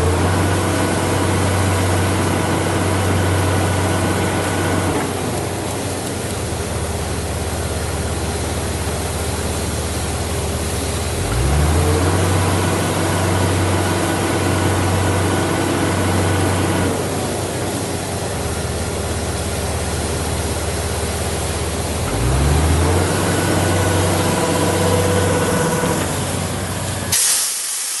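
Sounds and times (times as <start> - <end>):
drilling rig engine running: 0.0 - 27.3
loud hiss: 24.0 - 28.0.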